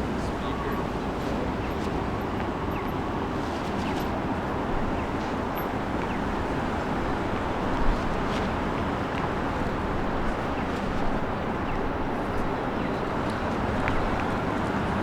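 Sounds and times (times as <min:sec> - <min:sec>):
traffic noise: 0:00.0 - 0:15.0.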